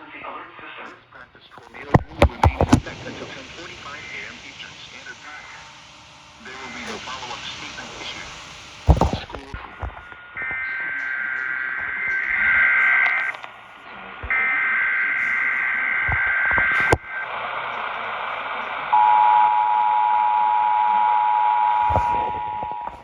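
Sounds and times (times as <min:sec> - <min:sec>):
radio hiss: 0:00.0 - 0:19.0, 0:21.6 - 0:23.0
click: 0:01.5 - 0:05.6, 0:06.4 - 0:11.1, 0:12.8 - 0:13.5, 0:16.1 - 0:17.0
warbling data bursts: 0:01.6 - 0:13.6.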